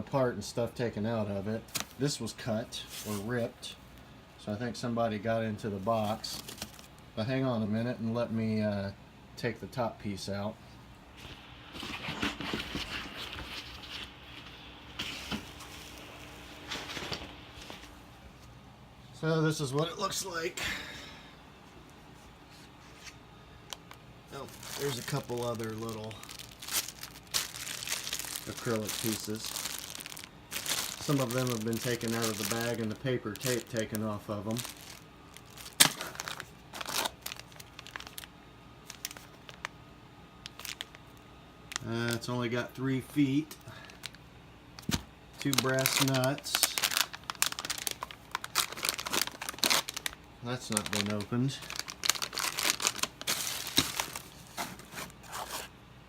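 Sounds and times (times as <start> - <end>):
packaging rustling and scraping: 2.8 - 3.6, 5.9 - 7.0, 11.2 - 18.0, 22.5 - 38.3, 38.9 - 39.6, 40.4 - 41.0, 44.8 - 55.8
plastic bags crinkling: 5.9 - 7.0, 11.2 - 18.0, 23.7 - 39.7, 40.4 - 42.4, 43.5 - 44.2, 44.8 - 55.8.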